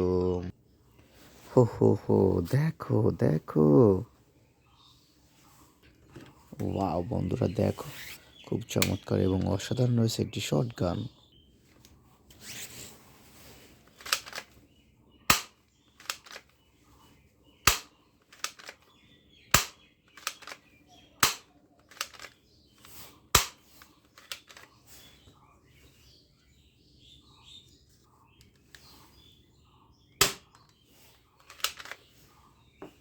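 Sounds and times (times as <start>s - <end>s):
toy gun plastic snaps: 13.9s - 14.5s, 15.3s - 16.5s, 17.6s - 18.9s, 19.5s - 20.6s, 21.2s - 24.7s, 30.2s - 30.8s, 31.4s - 32.0s.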